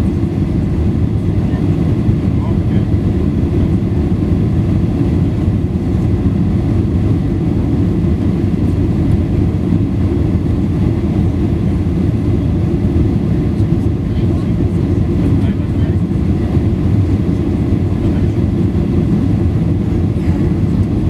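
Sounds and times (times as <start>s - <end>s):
airflow over fuselage: 0.0s - 21.0s
jet engines rumbling: 0.0s - 21.0s.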